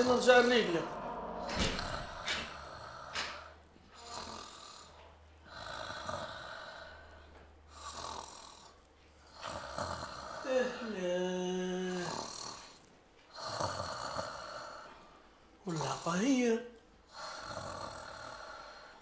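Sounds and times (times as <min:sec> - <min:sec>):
person snoring: 0:04.0 - 0:04.9, 0:05.5 - 0:07.1, 0:07.7 - 0:14.9, 0:17.1 - 0:19.0.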